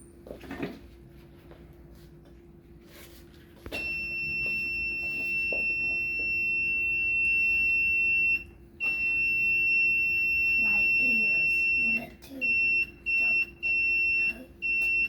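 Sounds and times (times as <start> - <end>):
high-pitched electronic alarm tone: 3.8 - 15.0.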